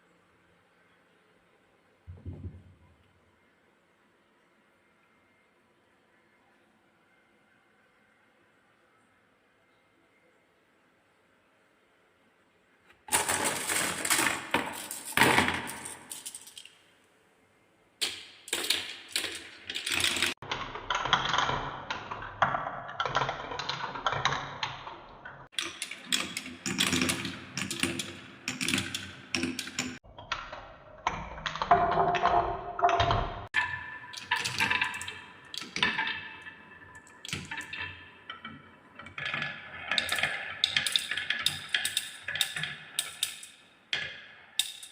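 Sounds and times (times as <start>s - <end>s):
balls clattering down wooden run: 13.1s - 16.6s, 18.0s - 20.4s, 31.5s - 44.9s.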